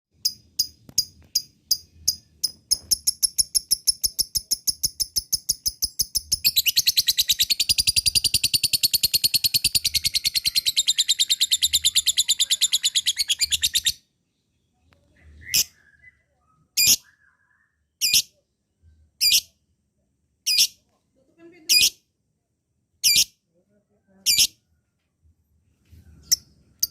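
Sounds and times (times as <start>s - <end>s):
lovebird chattering trill: 1.3s - 14.0s, 23.0s - 23.3s, 24.3s - 24.6s.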